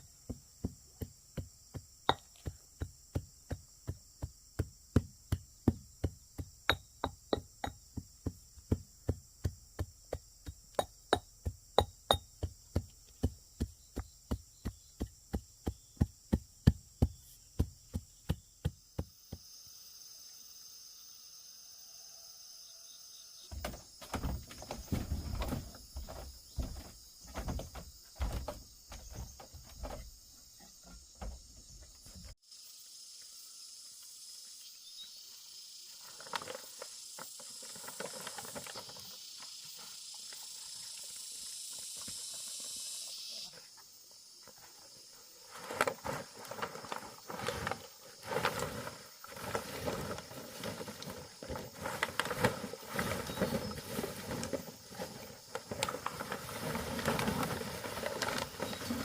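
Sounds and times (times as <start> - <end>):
knocking and tapping: 0.3 - 19.1.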